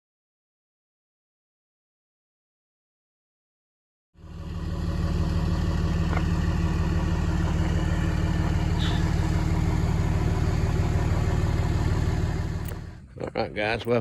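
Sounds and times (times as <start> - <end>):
engine idling: 4.2 - 14.0.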